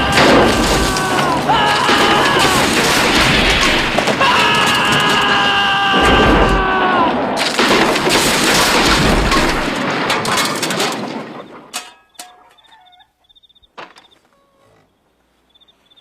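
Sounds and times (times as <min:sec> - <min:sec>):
loud blasts and crashes: 0:00.0 - 0:11.7.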